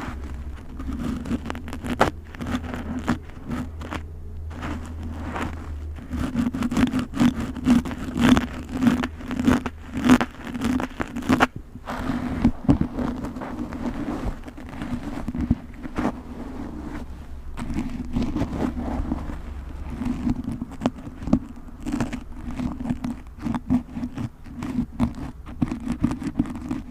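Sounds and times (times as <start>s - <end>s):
low hum: 0.0s - 25.6s
packaging rustling: 0.0s - 26.9s.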